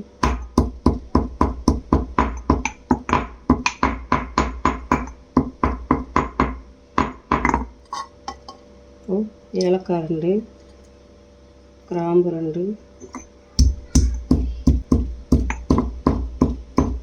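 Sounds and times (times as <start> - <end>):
pestle pounding in mortar: 0.2 - 7.8, 13.0 - 17.0
light pestle taps: 13.0 - 17.0.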